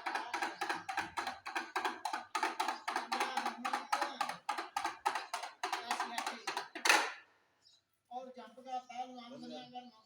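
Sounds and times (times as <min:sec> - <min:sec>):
drum beaten in fast rhythm: 0:00.0 - 0:07.0.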